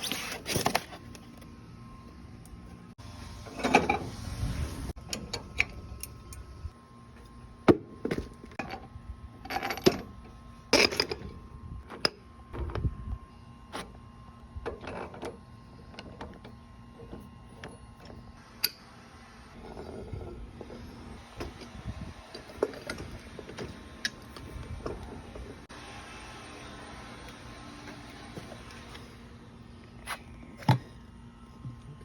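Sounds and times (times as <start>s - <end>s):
tools and parts clattering: 0.0s - 1.4s, 3.4s - 4.1s, 7.2s - 12.8s, 19.6s - 25.8s.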